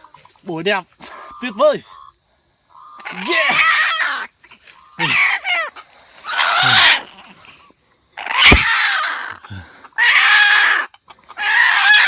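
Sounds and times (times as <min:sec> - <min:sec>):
junglefowl squawking: 0:02.7 - 0:07.1, 0:08.2 - 0:12.0
sharp knock: 0:08.5 - 0:08.7.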